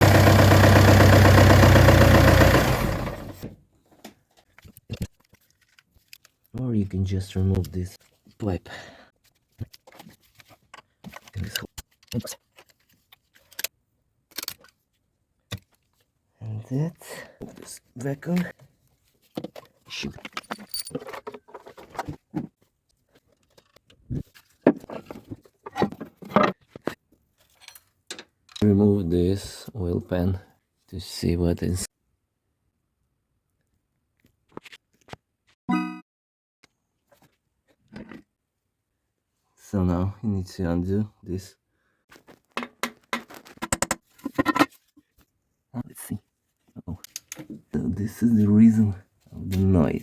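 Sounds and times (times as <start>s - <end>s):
diesel engine knocking: 0.0s - 3.4s.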